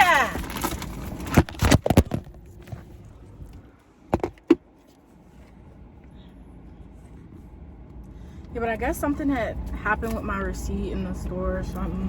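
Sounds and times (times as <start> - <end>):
knocks and clunks: 4.1 - 4.6.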